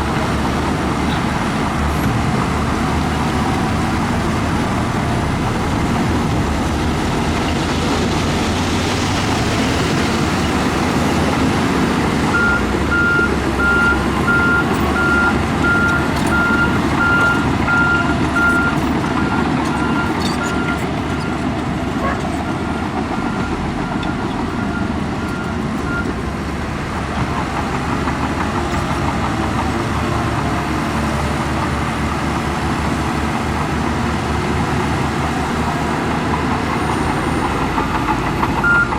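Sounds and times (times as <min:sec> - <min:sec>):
diesel earthmoving machines running: 0:00.0 - 0:38.9
reversing alarm beeping: 0:12.4 - 0:21.4, 0:38.6 - 0:38.9.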